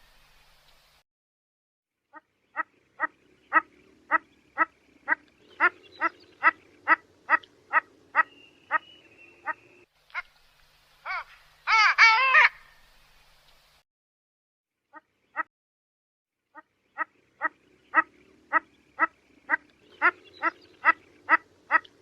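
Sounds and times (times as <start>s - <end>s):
ducks quacking: 2.2s - 10.3s, 16.6s - 22.0s.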